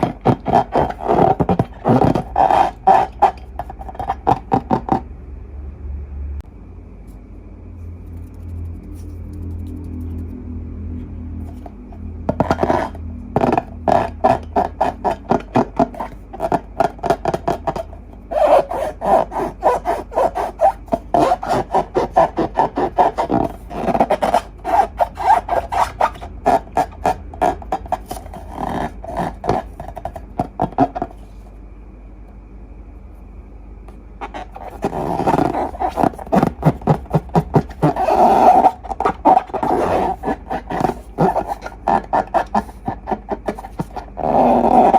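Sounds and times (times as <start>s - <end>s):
hands rubbing squeaky balloon: 0.0s - 5.0s, 11.5s - 31.4s, 34.2s - 44.9s.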